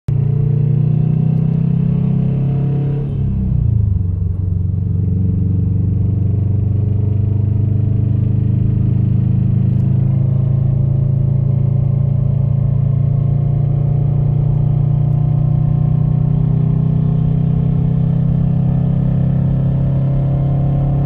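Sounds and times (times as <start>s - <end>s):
car engine idling: 3.8s - 15.6s.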